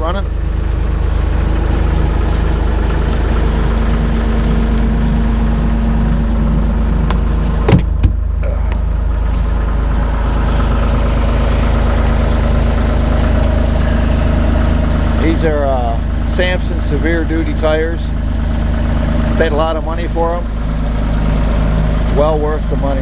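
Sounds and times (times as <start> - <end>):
diesel engine idling: 0.0 - 23.0
sharp knocks: 7.0 - 8.3.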